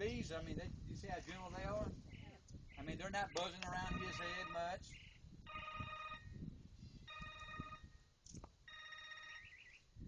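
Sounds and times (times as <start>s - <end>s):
phone ringtone ringing: 3.8s - 4.7s, 5.4s - 6.3s, 7.1s - 7.9s, 8.7s - 9.7s.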